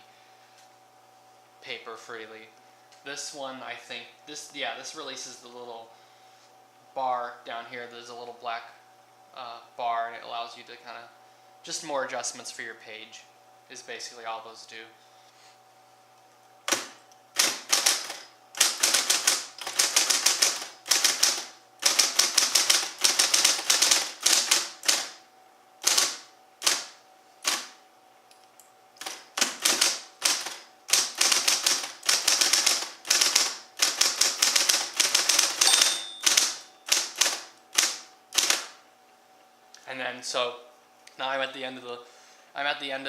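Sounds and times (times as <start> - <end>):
typewriter motor hum: 16.6 - 27.8, 29.0 - 38.8
electric typewriter key strikes: 16.7 - 25.2, 25.8 - 27.8, 29.0 - 38.7.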